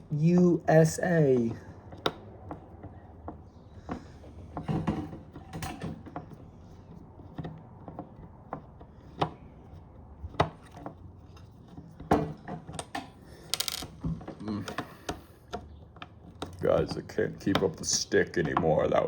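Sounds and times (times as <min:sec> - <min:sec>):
clicks and knocks of tools: 0:01.9 - 0:06.4.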